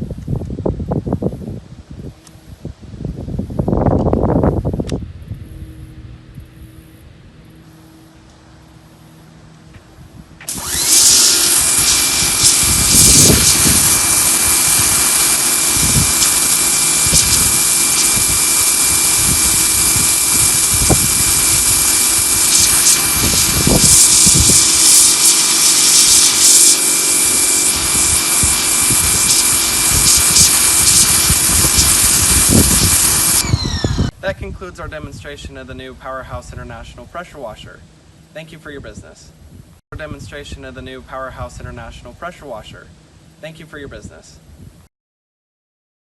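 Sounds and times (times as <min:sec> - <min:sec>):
pressure washer jet hissing: 0:10.4 - 0:34.1.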